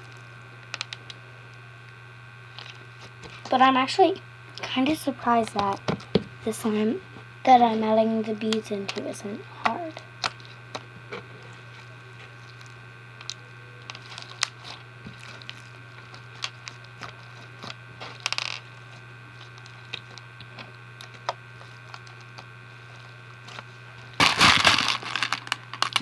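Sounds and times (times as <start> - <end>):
beads poured in rattling: 24.2 - 26.0.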